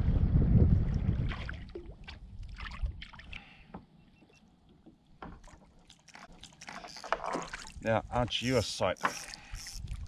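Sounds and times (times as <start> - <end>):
faint wind: 0.0 - 10.0.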